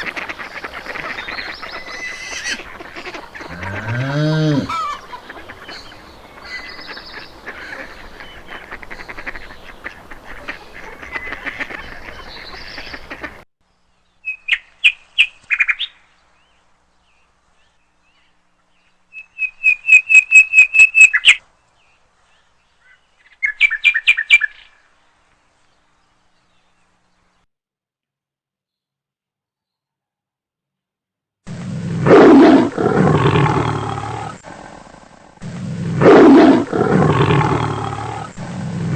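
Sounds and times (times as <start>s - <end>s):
birds chattering: 0.0s - 13.4s, 32.6s - 35.0s, 36.4s - 38.9s
rapid high bird chirps: 0.0s - 13.4s, 19.2s - 21.4s.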